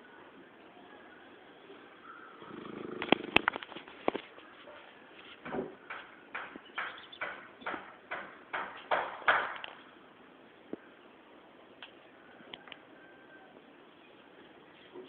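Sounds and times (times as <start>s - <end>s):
pet snoring: 2.4s - 3.4s.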